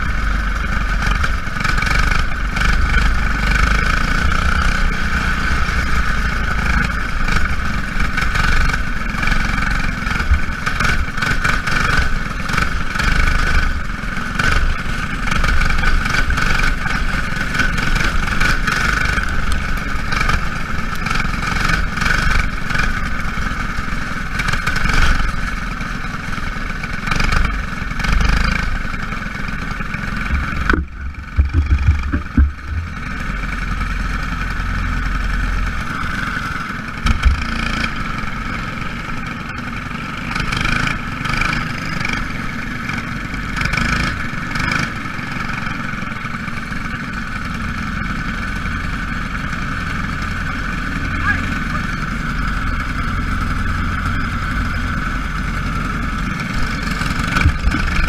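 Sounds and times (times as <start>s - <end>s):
race car engines at high revs: 0.0s - 58.0s
low thumps: 30.3s - 33.2s.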